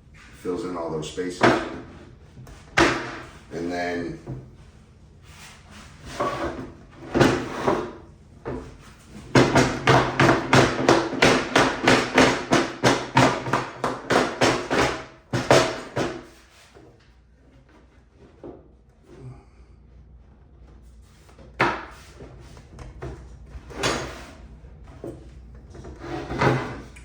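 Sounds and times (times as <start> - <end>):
hammer knocking wood: 2.8 - 3.3, 9.3 - 16.3.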